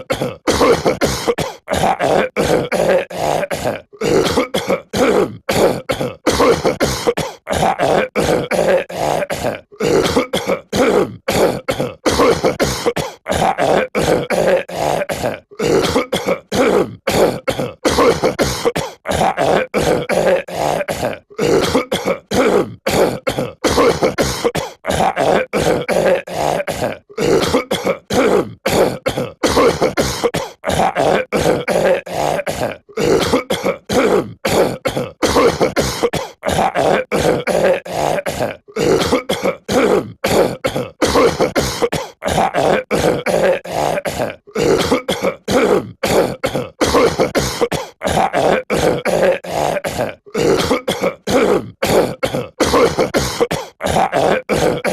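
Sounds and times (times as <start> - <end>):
cartoon voice coughing: 0.0 - 54.9.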